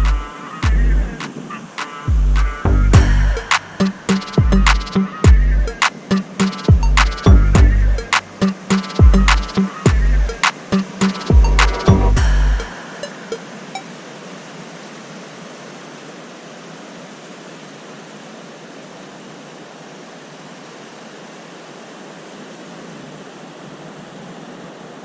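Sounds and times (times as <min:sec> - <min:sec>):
background music: 0:00.0 - 0:13.5
water rushing: 0:00.0 - 0:25.0.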